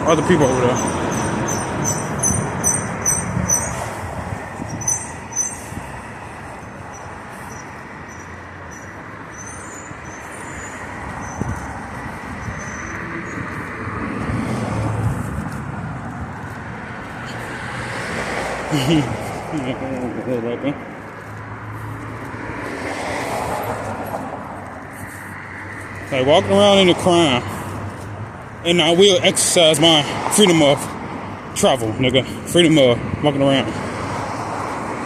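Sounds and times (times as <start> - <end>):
passing vehicle noise: 0.0 - 35.0.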